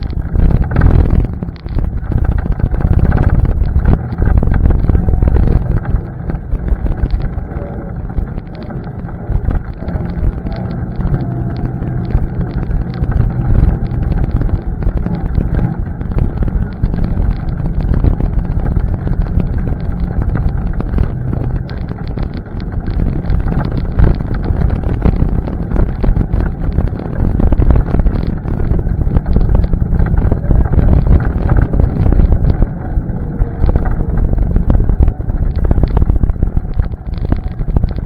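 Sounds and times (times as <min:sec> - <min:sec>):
atv engine running: 0:00.0 - 0:38.0
wind buffeting microphone: 0:00.0 - 0:38.0.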